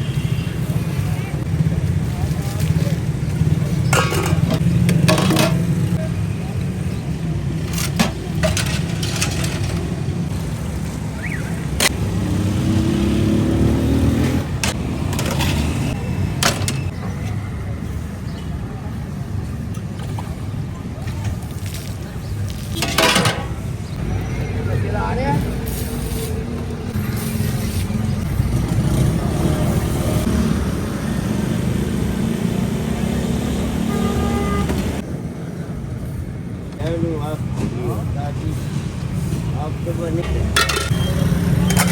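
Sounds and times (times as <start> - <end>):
vehicle engine rumble: 0.0 - 41.9.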